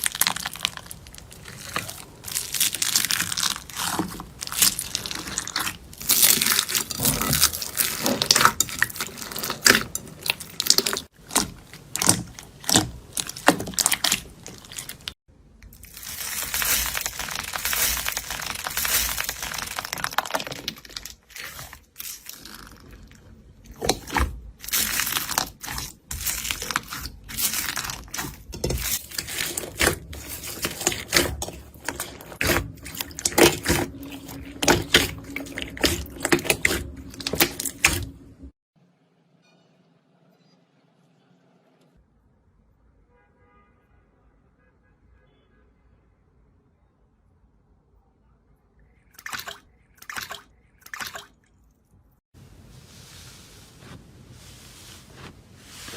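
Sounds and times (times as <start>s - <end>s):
slime crunching and popping: 0.0s - 38.1s.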